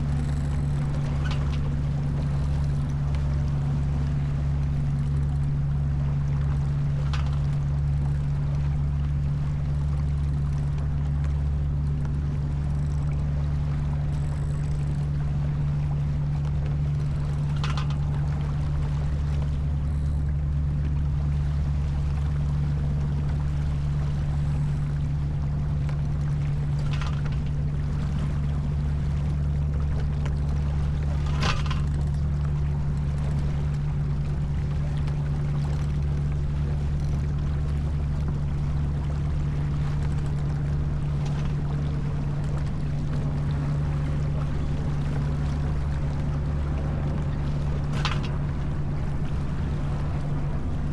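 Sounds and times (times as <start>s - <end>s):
steady low drone: 0.0s - 50.9s
water wash against boat: 0.0s - 50.9s
faint clicks or knocks: 6.5s - 7.6s, 16.4s - 18.5s, 25.8s - 28.0s, 30.0s - 33.4s, 47.1s - 48.7s.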